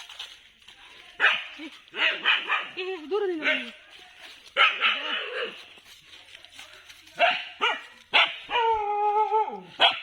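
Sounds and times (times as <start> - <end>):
dog barking: 1.2 - 2.8, 4.6 - 5.6, 7.2 - 8.8, 9.8 - 10.0.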